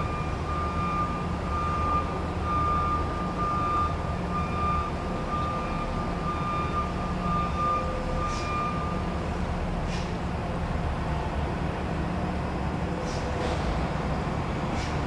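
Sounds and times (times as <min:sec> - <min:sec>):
truck reversing beeper: 0:00.0 - 0:09.4.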